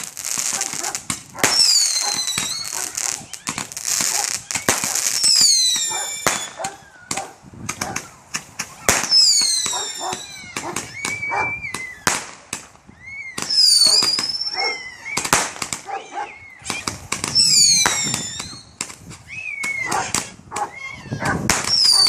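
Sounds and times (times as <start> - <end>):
roman candle pops and crackling: 0.0 - 12.8, 15.2 - 16.0, 16.6 - 20.7.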